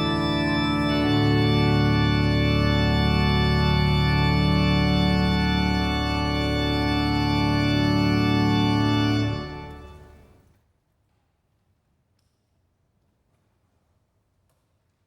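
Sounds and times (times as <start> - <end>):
church organ chord: 0.0 - 10.3.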